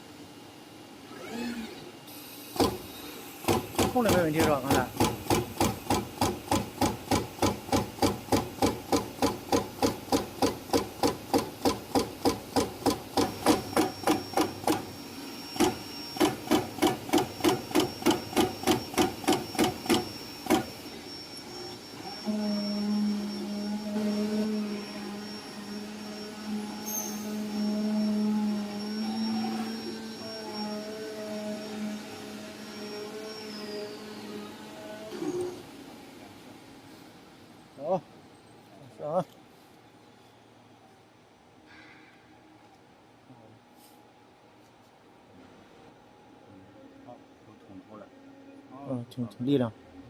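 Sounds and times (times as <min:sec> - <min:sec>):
steady machine hum: 0:00.0 - 0:38.2
machine punching head striking: 0:03.4 - 0:13.9.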